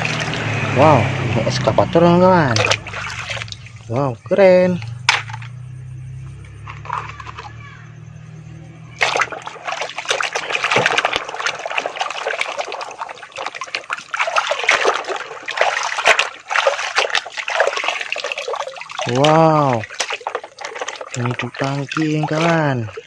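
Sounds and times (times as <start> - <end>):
water splashing and running: 0.0 - 4.3, 8.9 - 23.0.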